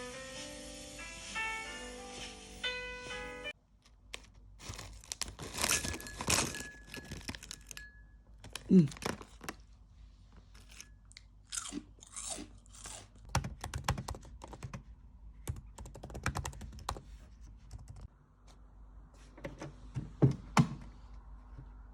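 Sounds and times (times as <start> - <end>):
crunchy food being chewed: 10.5 - 13.3.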